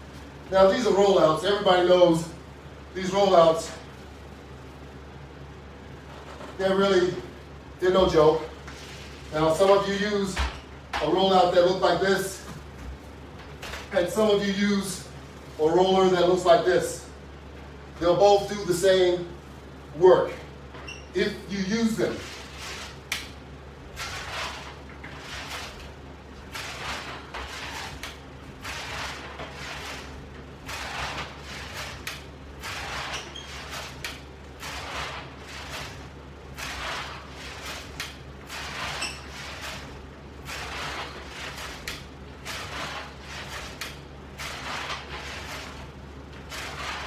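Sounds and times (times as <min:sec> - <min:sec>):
ab roller wheel rolling on floor: 0:21.9 - 0:23.2, 0:23.9 - 0:47.0.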